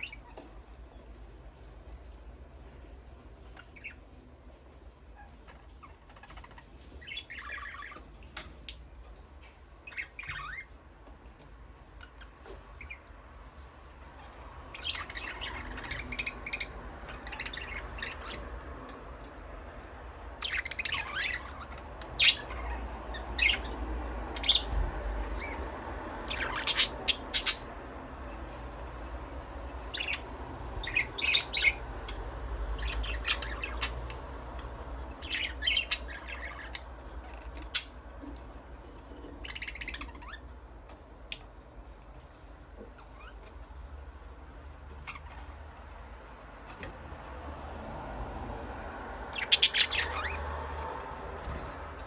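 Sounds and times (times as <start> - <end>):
budgerigars chirping: 5.2 - 8.8, 9.4 - 10.7, 14.2 - 19.0, 20.2 - 40.6, 45.0 - 45.6, 49.3 - 51.8.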